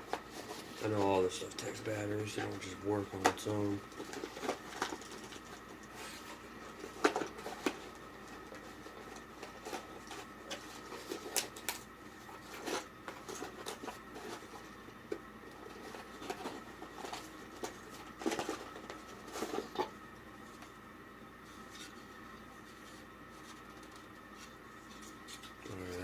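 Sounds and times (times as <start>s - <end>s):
packaging rustling: 0.0s - 20.5s
faint electrical hum: 0.0s - 26.0s.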